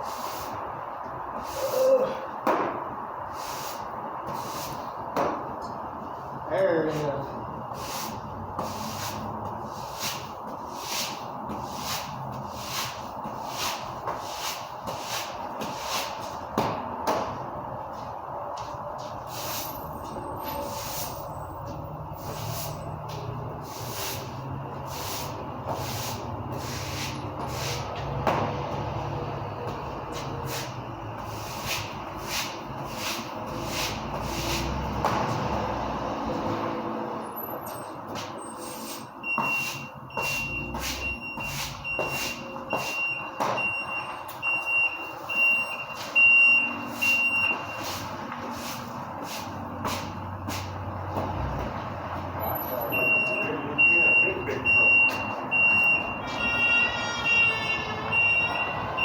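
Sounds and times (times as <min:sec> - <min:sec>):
broom sweeping concrete floor: 0:00.0 - 0:02.2, 0:03.2 - 0:05.5, 0:06.1 - 0:58.7
truck reversing alarm beeping: 0:17.6 - 0:28.2, 0:37.2 - 0:49.0, 0:52.4 - 0:59.0.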